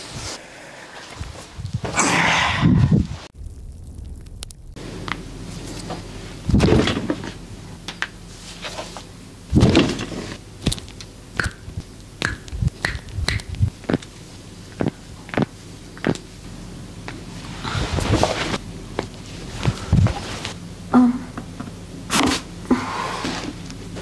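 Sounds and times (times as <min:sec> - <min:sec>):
sharp joint pops and clicks: 0:10.6 - 0:14.0.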